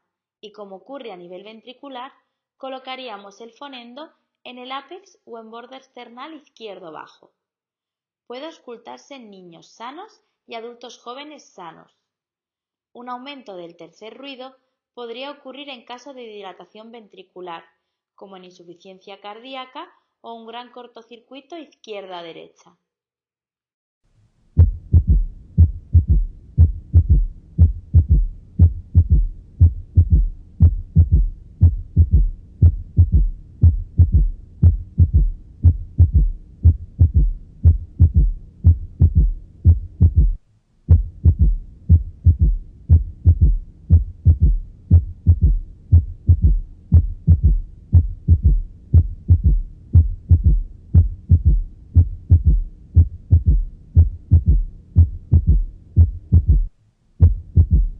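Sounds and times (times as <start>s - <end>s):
heartbeats through stethoscope: 24.6s - 57.9s.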